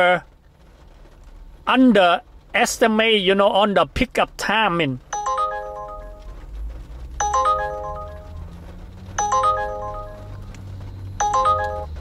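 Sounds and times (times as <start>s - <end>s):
smartphone alert chime: 5.1s - 6.4s, 7.2s - 8.4s, 9.2s - 10.4s, 11.2s - 12.0s.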